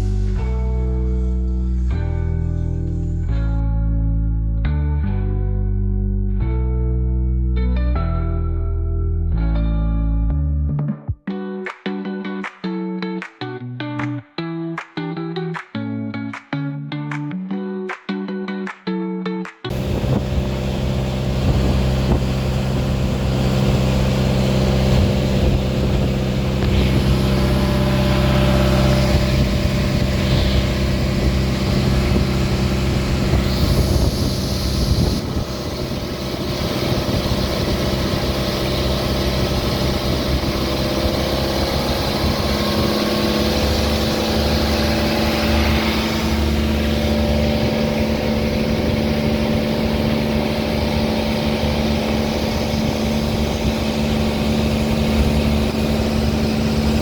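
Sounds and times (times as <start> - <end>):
small boat engine running: 0.0 - 3.2, 19.7 - 57.0.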